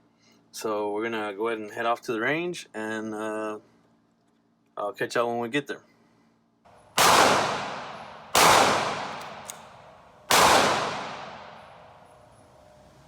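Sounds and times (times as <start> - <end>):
pistol shots with echo: 6.7 - 12.3.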